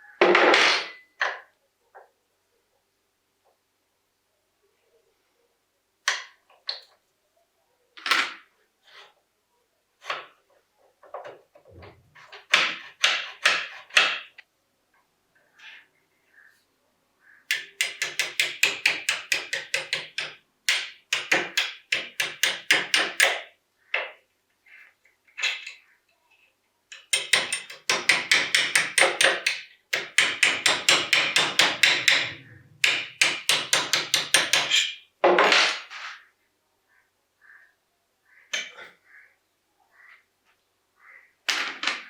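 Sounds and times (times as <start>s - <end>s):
hammer tapping on metal: 17.5s - 23.4s, 26.9s - 35.0s.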